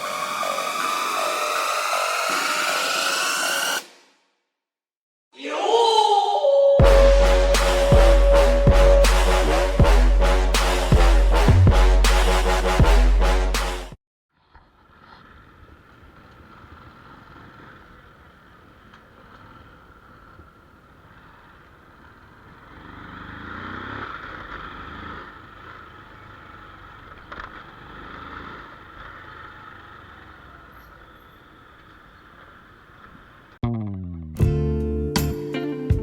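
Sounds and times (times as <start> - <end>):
vehicle engine: 14.4 - 33.8.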